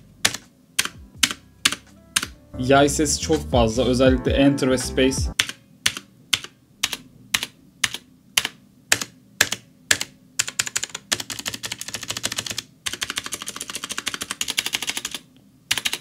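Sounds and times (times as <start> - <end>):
rapid typing clatter: 8.9 - 16.0.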